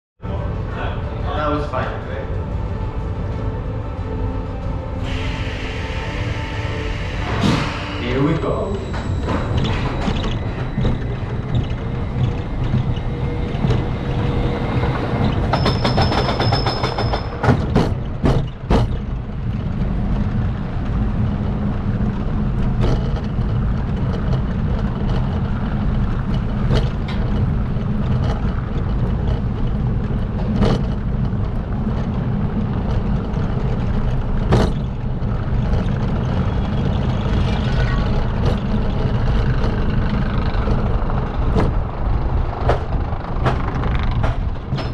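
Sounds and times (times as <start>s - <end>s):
roller coaster mechanical rumble: 0.2s - 44.9s
sharp clacks: 42.6s - 44.9s.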